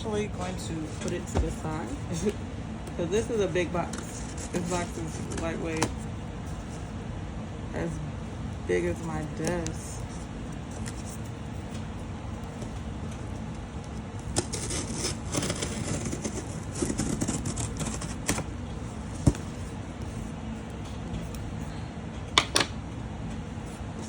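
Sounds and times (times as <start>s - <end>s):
steady background noise: 0.0s - 24.0s
cardboard box rustling and scraping: 14.3s - 18.5s.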